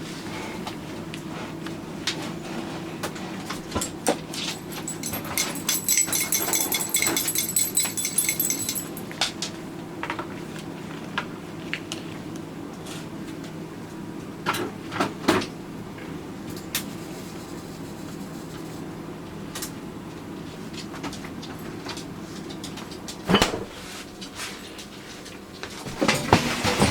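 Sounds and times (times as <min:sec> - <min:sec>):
metal dog collar jangling: 0:03.8 - 0:09.2.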